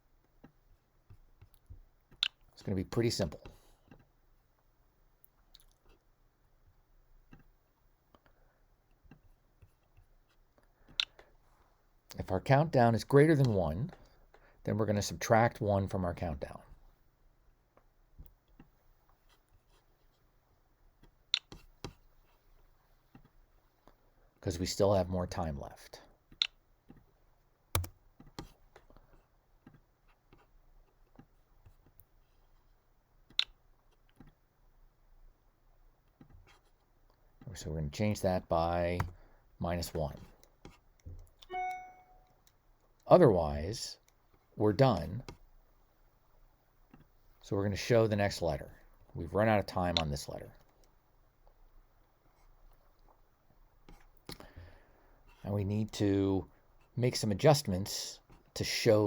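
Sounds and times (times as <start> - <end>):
faint steady hum: 0.0 - 59.0
computer mouse clicks: 27.8 - 28.6.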